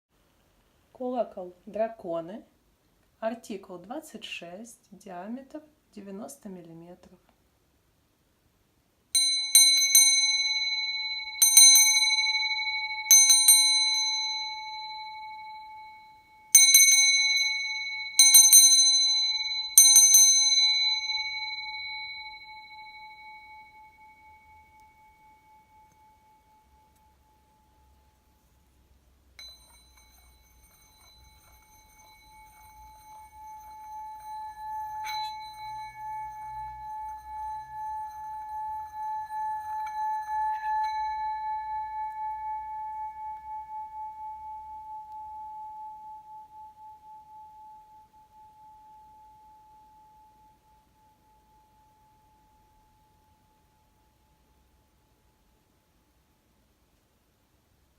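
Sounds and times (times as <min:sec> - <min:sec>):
bell struck ringing: 0:09.2 - 0:27.9, 0:29.4 - 0:46.6
bell rubbed around rim: 0:09.2 - 0:28.8, 0:29.4 - 0:54.0.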